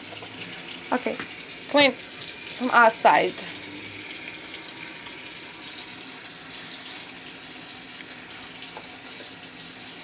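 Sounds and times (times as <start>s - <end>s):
tap running into sink: 0.0s - 0.4s, 1.1s - 1.4s, 8.6s - 10.0s.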